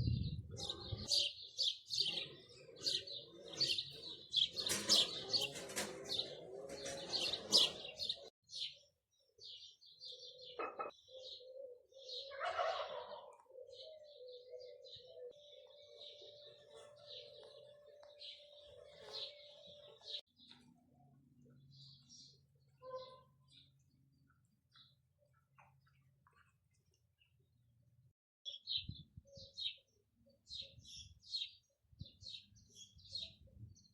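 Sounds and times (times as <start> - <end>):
faint low thumps: 0.0 - 1.0
small birds chirping: 0.0 - 27.4, 28.5 - 33.9.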